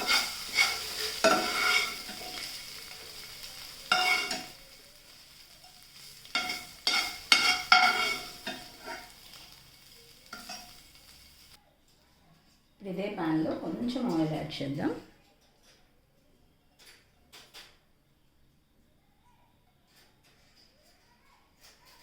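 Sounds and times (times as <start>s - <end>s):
spatula scraping a frying pan: 0.0s - 9.5s, 10.2s - 11.6s
hot oil sizzling: 0.0s - 11.6s.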